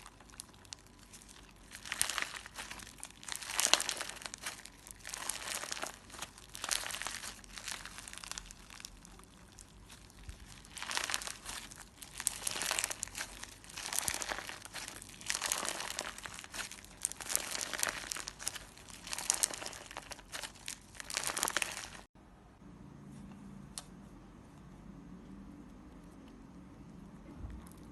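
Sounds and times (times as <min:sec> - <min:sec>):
slime crackling when kneaded: 0:00.0 - 0:22.1.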